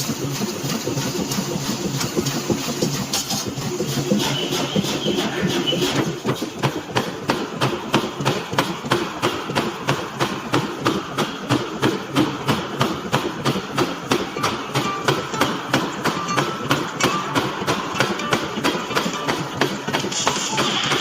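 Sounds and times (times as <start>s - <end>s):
machinery rumble: 0.0s - 21.0s
forging hammer striking hot metal: 14.0s - 21.0s.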